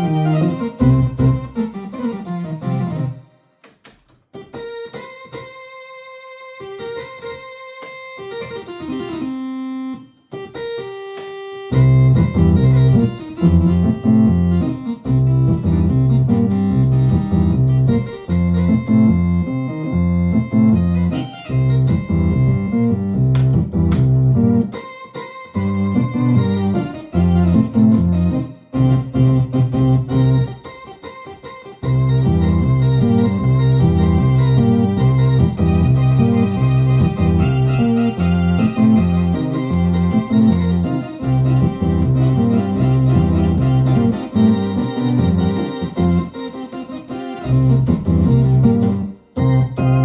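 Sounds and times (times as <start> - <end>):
electronic organ chords with vibrato: 0.0 - 3.5, 4.4 - 50.0.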